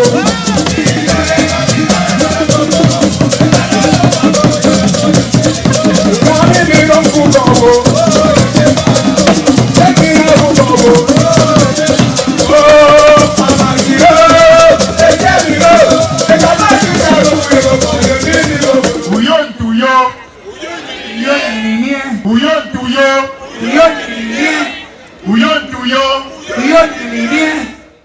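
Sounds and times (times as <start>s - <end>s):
upbeat music: 0.0s - 19.2s
drums: 0.0s - 19.3s
shaker rhythm: 0.0s - 19.3s.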